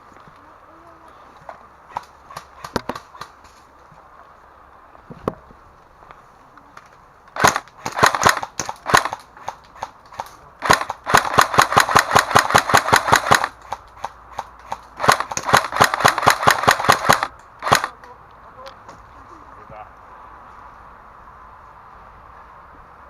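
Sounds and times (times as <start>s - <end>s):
airsoft guns firing: 7.4s - 18.0s.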